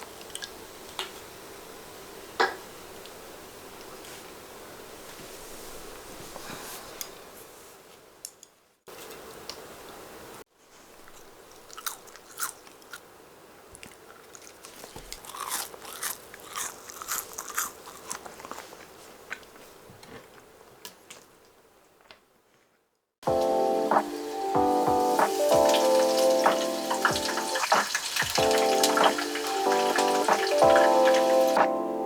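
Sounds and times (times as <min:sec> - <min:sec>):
person chewing crunchy food: 0:11.1 - 0:13.0, 0:13.8 - 0:20.4.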